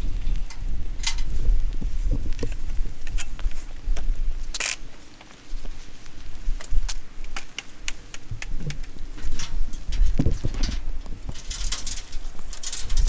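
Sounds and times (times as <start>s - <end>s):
metal strap hardware clanking: 8.1s - 13.0s.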